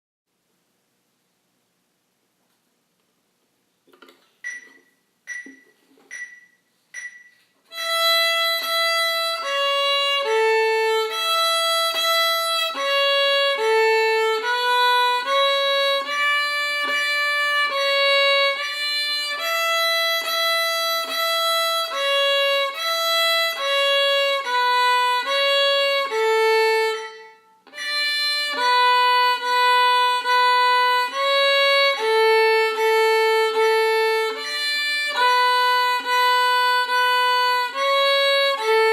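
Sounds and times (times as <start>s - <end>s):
count-in clicks: 4.0s - 7.5s
solo violin melody: 7.7s - 38.9s.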